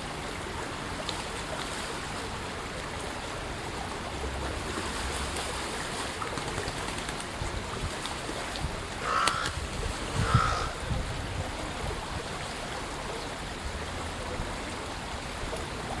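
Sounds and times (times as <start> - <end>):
crow cawing: 9.0 - 9.6, 10.2 - 10.8.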